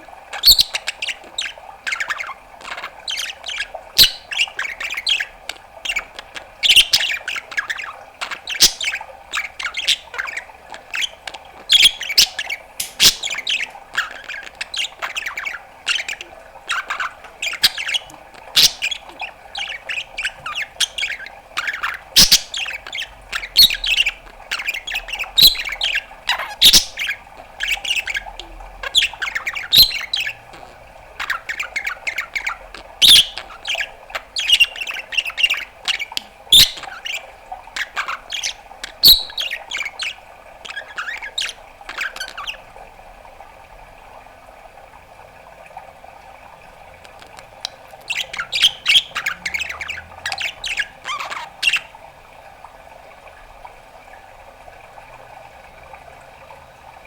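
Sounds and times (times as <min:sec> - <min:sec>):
budgerigar chattering: 0:00.4 - 0:37.2, 0:37.8 - 0:42.6, 0:47.1 - 0:51.9.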